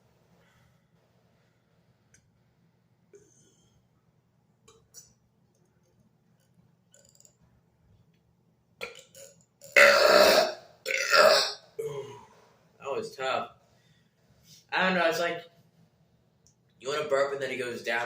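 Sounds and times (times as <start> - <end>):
throat clicks: 8.8 - 9.8
man belching: 8.8 - 12.2.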